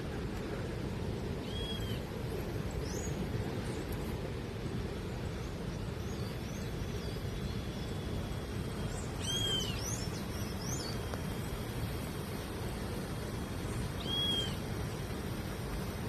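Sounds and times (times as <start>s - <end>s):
steady low rumble: 0.0s - 16.0s
birds chirping: 1.4s - 4.0s, 5.2s - 11.7s, 13.5s - 14.7s.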